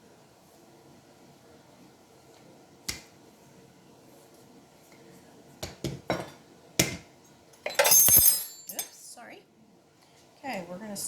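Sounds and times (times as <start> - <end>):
utensils knocking on counter: 7.6 - 8.8.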